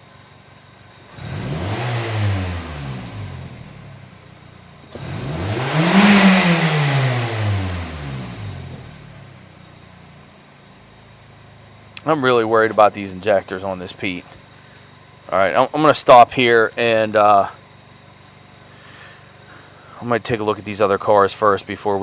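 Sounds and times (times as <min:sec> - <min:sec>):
car engine revving: 0:01.0 - 0:10.2.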